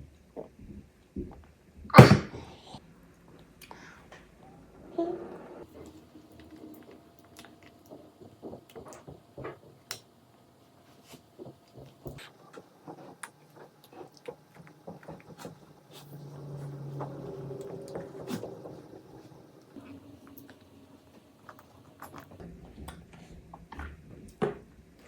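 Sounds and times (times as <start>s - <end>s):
child chewing and eating: 0.2s - 25.0s
low hum: 15.8s - 24.2s.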